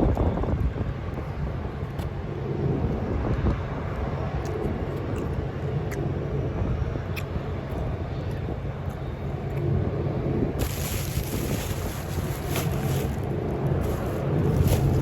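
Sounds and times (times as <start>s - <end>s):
wind on microphone: 0.0s - 1.8s, 10.4s - 15.0s
low outdoor rumble: 0.0s - 15.0s.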